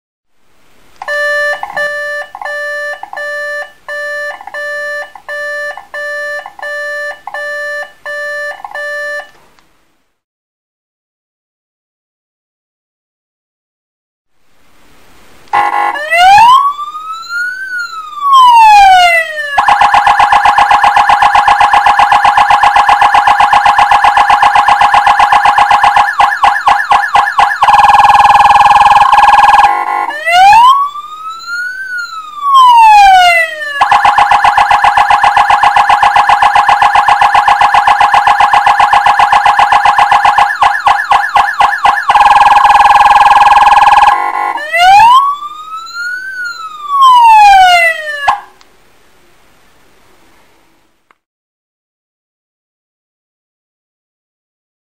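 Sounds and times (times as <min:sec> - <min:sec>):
electronic siren cycling tones: 0:01.0 - 0:09.3, 0:15.6 - 0:48.5.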